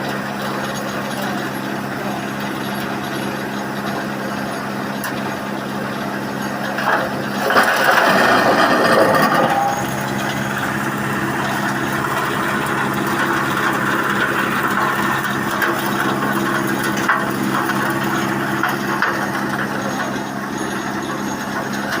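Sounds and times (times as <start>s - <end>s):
wood crusher machine humming: 0.0s - 22.0s
wood being crushed and shredded: 6.7s - 19.7s.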